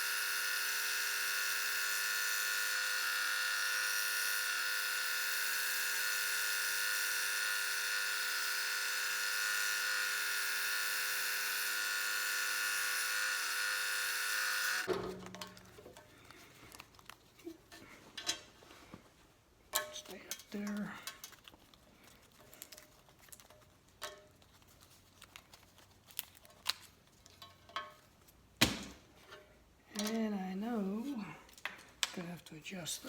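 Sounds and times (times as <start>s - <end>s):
scroll saw cutting plywood: 0.0s - 14.9s.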